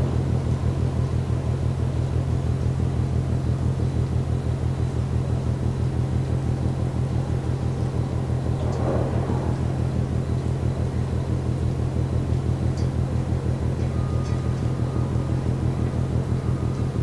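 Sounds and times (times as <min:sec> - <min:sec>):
distant ship engine drone: 0:00.0 - 0:17.0
rush of noise: 0:07.2 - 0:12.0.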